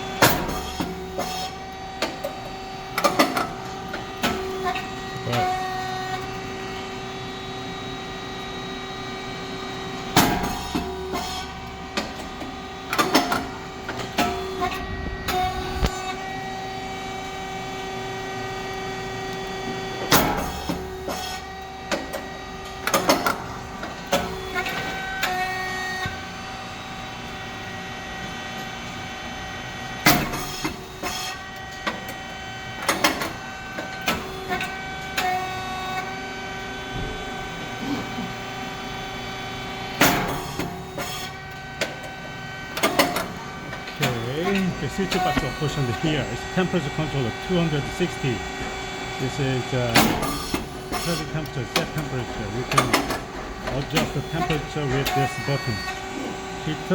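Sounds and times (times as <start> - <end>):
motor and pump hum: 0.0 - 56.9
sharp machine pop: 49.9 - 52.0.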